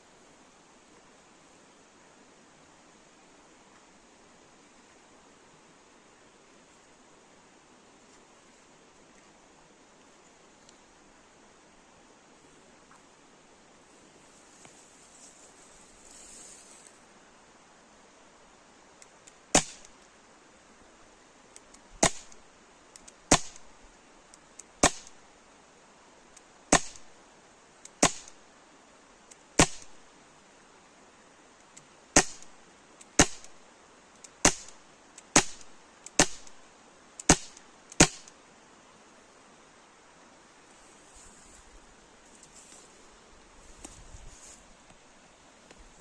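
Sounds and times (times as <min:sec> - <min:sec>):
bb pistol shots: 0:19.5 - 0:19.9, 0:22.0 - 0:22.4, 0:23.3 - 0:23.6, 0:24.8 - 0:25.2, 0:26.7 - 0:27.1, 0:28.0 - 0:28.4, 0:29.6 - 0:29.9, 0:32.2 - 0:32.5, 0:33.2 - 0:33.5, 0:34.4 - 0:36.6, 0:37.2 - 0:38.3.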